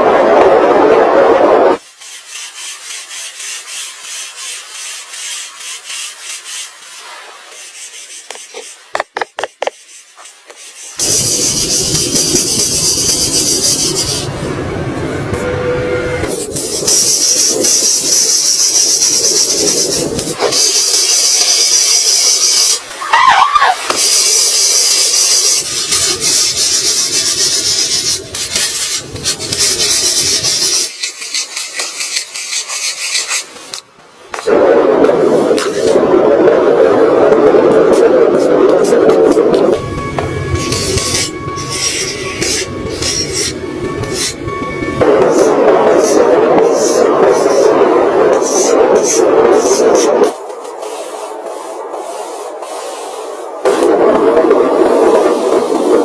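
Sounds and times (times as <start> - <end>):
rasp scraping wood: 1.8 - 14.3
wood being rubbed by hand: 1.8 - 14.4, 16.3 - 33.8, 37.7 - 44.4, 45.0 - 53.9.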